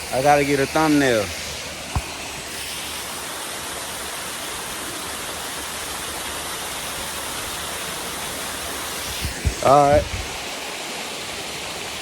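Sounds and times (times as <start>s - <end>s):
stream water rushing: 0.0s - 12.0s.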